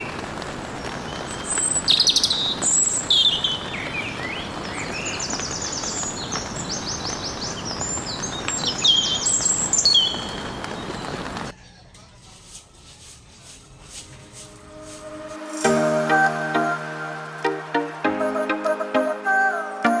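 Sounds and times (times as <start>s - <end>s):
songbirds chirping and trilling: 1.0s - 12.0s
steady background hiss: 12.4s - 20.0s.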